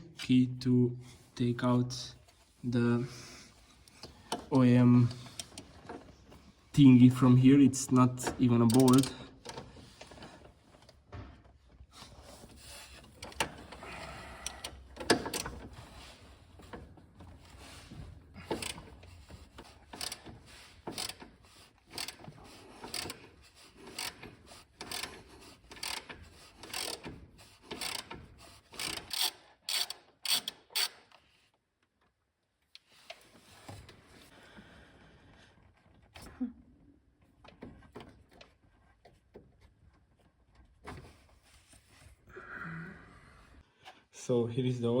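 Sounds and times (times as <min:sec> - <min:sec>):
ratchet clicking: 0:08.7 - 0:09.1, 0:20.9 - 0:21.3, 0:21.9 - 0:23.2, 0:23.9 - 0:27.1, 0:27.7 - 0:31.0.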